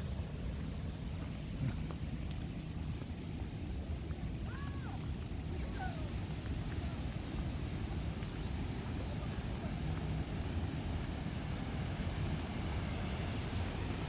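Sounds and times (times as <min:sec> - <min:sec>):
steady low rumble: 0:00.0 - 0:14.0
bird chirps: 0:02.7 - 0:09.7.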